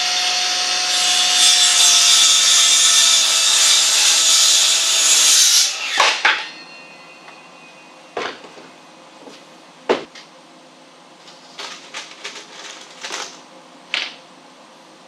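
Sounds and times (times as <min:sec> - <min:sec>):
low shop hum: 0:00.0 - 0:15.0
parts knocking on workbench: 0:08.2 - 0:10.1.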